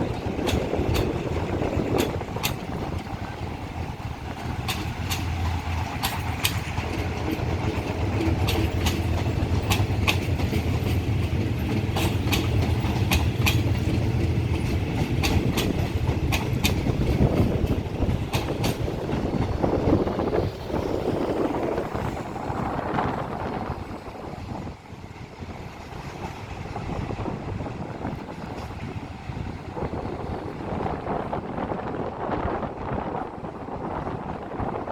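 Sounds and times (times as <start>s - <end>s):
train wheels clicking over rail joints: 0.0s - 31.7s
train rumble: 0.0s - 34.9s.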